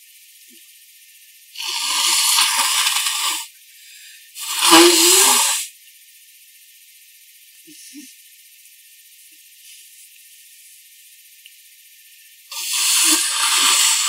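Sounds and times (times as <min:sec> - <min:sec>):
person blowing nose: 0:01.6 - 0:03.5, 0:04.4 - 0:05.7, 0:12.5 - 0:14.0.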